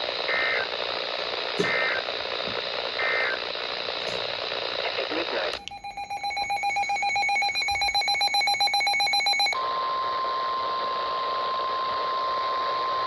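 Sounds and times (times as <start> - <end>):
radio hiss: 0.0 - 5.7
steady warning alarm tone: 0.3 - 4.4, 5.6 - 9.6
rapid buzzy alarm beeping: 5.7 - 9.6.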